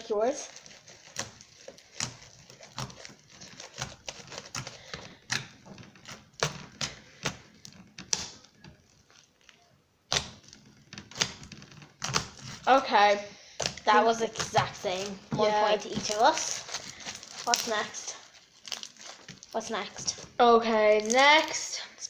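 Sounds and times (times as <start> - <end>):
slime clicking and popping: 1.0 - 12.6.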